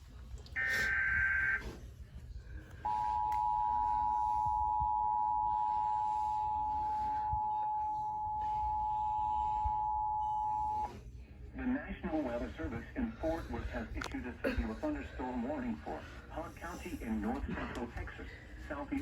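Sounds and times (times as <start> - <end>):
two-tone attention signal: 0.6 - 1.7, 2.9 - 10.9.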